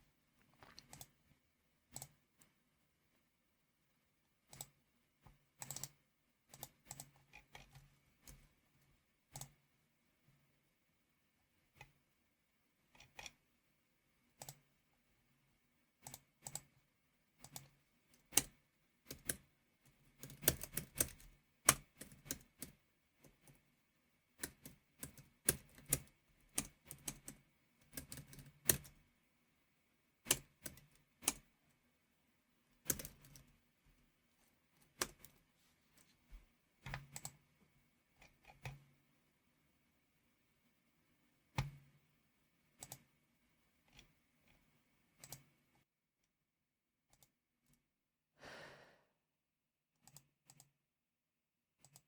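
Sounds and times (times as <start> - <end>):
typing on computer keyboard: 5.6 - 8.4, 12.9 - 13.4, 14.4 - 14.7, 16.0 - 16.7, 17.4 - 23.6, 24.4 - 29.0, 30.2 - 31.5, 32.8 - 33.5, 34.8 - 35.4, 45.2 - 45.5, 51.8 - 52.0.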